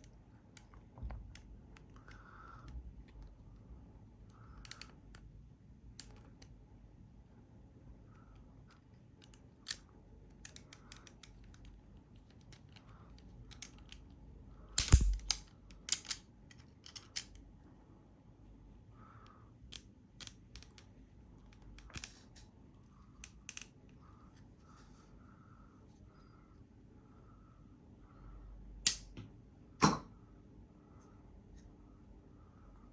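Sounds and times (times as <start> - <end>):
loud sharp plastic snap: 14.8 - 15.4.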